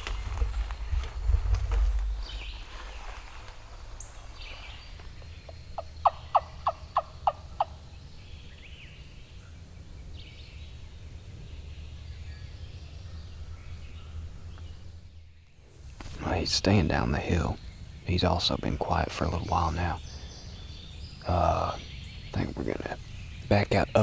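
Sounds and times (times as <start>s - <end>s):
songbirds chirping: 0.0s - 24.0s
wild turkey yelping: 5.8s - 7.8s.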